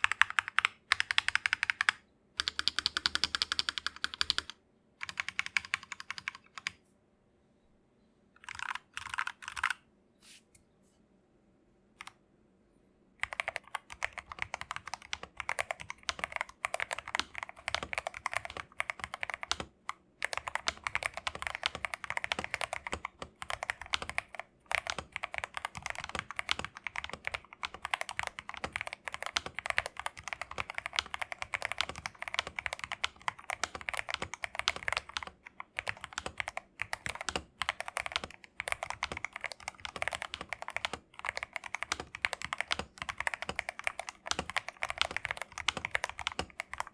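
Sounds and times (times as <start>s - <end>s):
fast mechanical keyboard typing: 0.0s - 6.8s, 8.4s - 9.8s, 13.2s - 46.9s.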